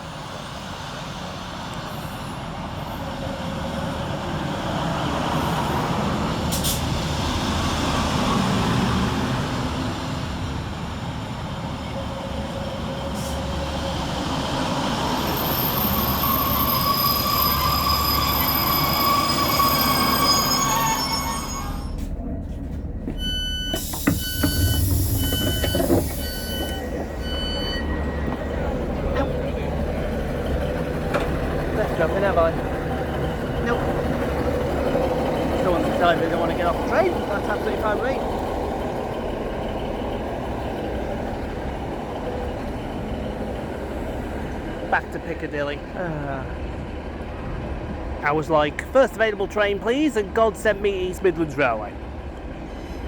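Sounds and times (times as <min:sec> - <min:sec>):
train brakes squealing: 0:12.9 - 0:22.2, 0:23.2 - 0:29.4, 0:30.0 - 0:44.8, 0:52.6 - 0:53.0
train door beeps: 0:15.0 - 0:22.2, 0:23.1 - 0:29.4, 0:33.0 - 0:37.8.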